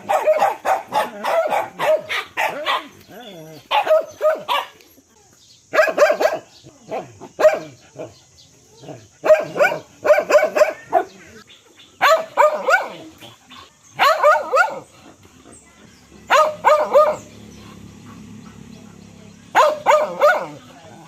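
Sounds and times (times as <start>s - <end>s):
dog barking: 0.0s - 3.0s, 3.7s - 4.8s, 5.7s - 8.1s, 9.2s - 11.2s, 12.0s - 13.3s, 14.0s - 14.9s, 16.2s - 17.4s, 18.0s - 20.8s.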